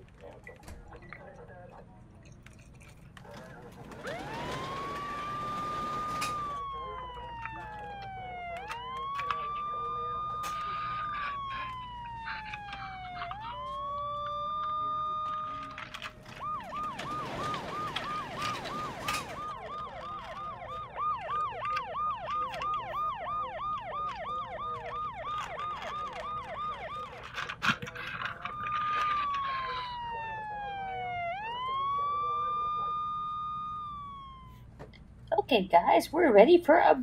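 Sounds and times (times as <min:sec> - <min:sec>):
police siren wailing and yelping: 0:03.3 - 0:34.8
clicks: 0:06.1 - 0:10.8.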